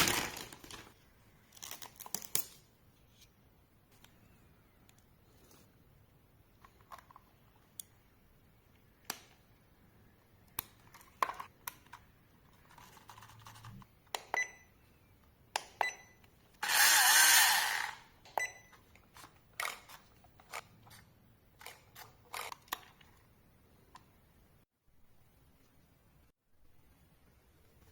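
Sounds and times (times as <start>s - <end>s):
packaging rustling: 0.0s - 1.0s
plastic parts clicking and tapping: 10.4s - 14.4s.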